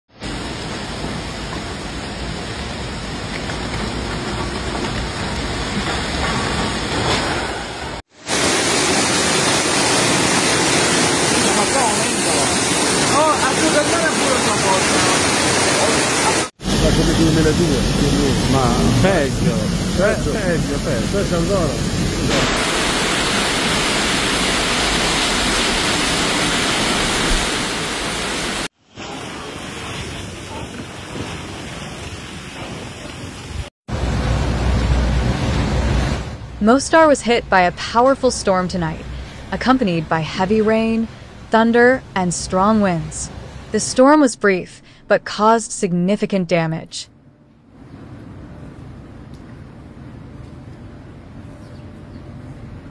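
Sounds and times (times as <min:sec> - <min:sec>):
heavy rain pouring: 0:00.2 - 0:36.6.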